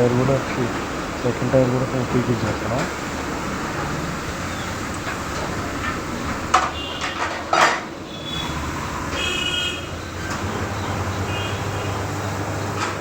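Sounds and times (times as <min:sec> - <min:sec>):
metal tools clanking: 0:03.8 - 0:13.0
steady low hum: 0:08.3 - 0:13.0.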